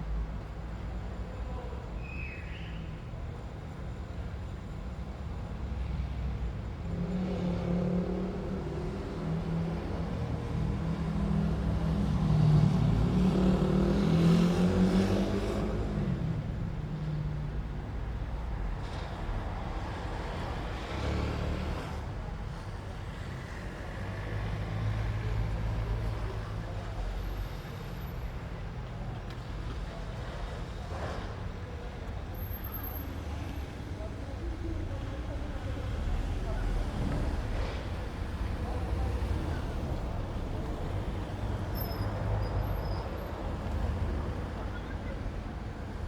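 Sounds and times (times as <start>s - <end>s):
traffic rumble: 3.1s - 46.0s
cars passing: 29.0s - 46.0s.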